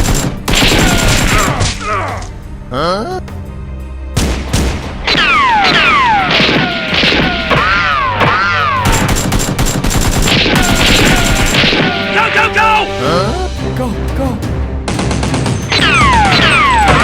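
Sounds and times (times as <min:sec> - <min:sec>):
machine-gun fire: 0:00.0 - 0:01.5, 0:05.7 - 0:12.0.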